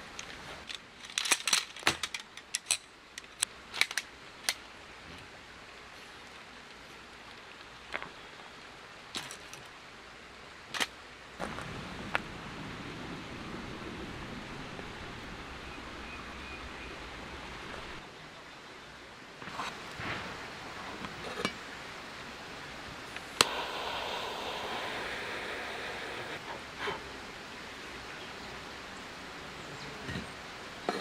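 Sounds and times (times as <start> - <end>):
outdoor background noise: 0.0 - 31.0
hissing rustle: 19.4 - 27.9.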